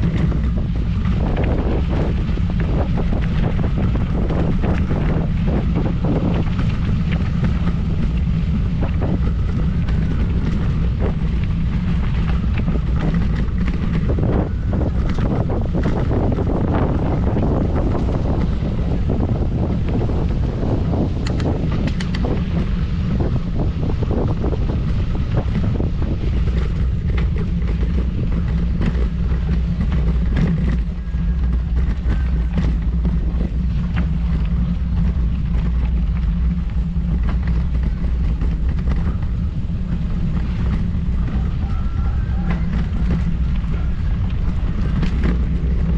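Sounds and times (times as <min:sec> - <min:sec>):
wind buffeting the microphone: 0:00.0 - 0:45.9.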